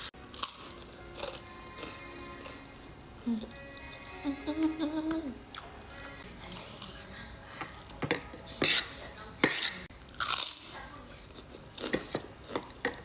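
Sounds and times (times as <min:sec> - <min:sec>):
crunching and chewing: 0:00.2 - 0:02.6, 0:05.4 - 0:07.1, 0:10.0 - 0:13.0.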